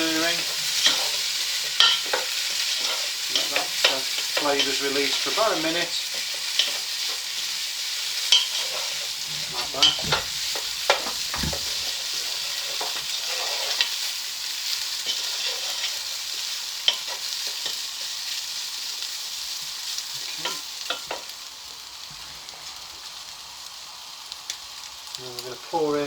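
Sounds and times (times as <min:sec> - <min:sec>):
food sizzling in a pan: 0:00.0 - 0:26.0
utensil clinking against pan: 0:00.8 - 0:05.2, 0:08.3 - 0:12.0.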